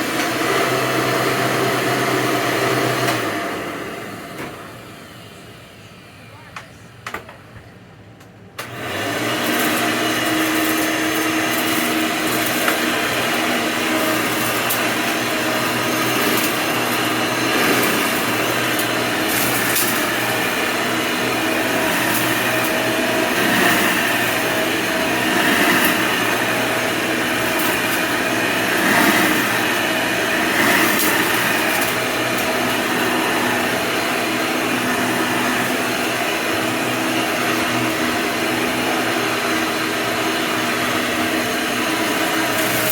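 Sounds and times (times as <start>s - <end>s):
vacuum cleaner motor running: 0.0s - 6.1s, 8.6s - 42.9s.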